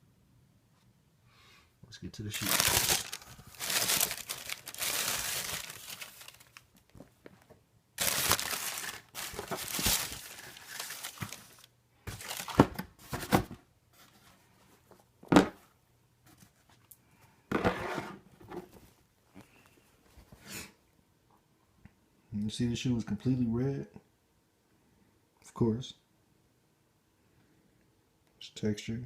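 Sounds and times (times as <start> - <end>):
paper rustling and crinkling: 2.3 - 14.9.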